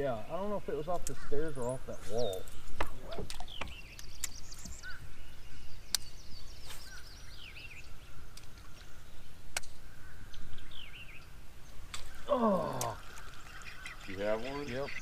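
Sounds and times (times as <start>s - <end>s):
low background noise: 0.0s - 15.0s
small birds singing: 0.0s - 15.0s
sharp clicks: 2.3s - 4.4s.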